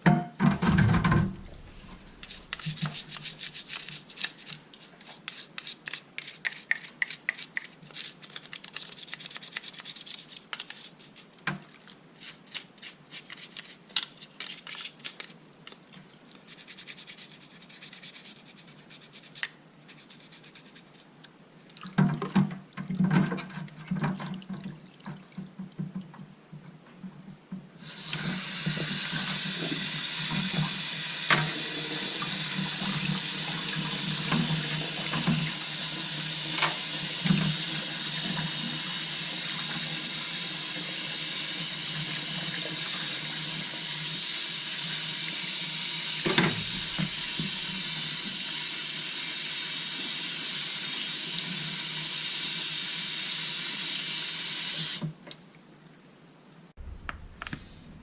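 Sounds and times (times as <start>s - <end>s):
rubbing and scraping small parts: 0.6s - 21.3s
steady hiss: 0.9s - 8.3s, 27.8s - 55.1s.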